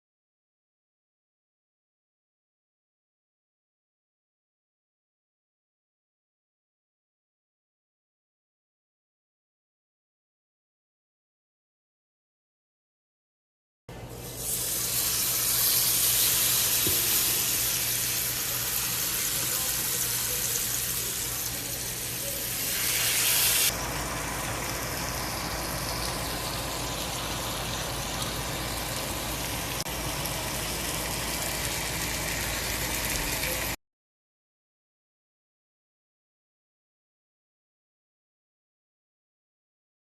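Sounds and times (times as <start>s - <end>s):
steak sizzling in a hot pan: 14.3s - 33.8s.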